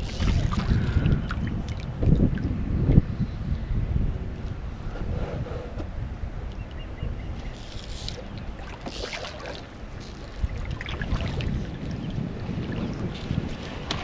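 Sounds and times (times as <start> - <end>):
water splashing on hull: 0.0 - 2.5, 7.5 - 14.0
wind buffeting microphone: 0.0 - 14.0.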